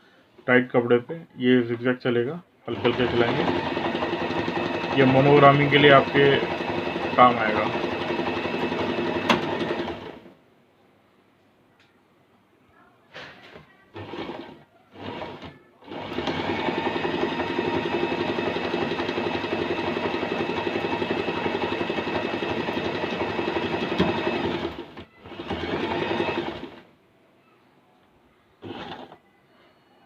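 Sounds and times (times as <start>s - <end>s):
sewing machine running: 2.7s - 10.3s, 13.9s - 26.9s, 28.6s - 29.2s.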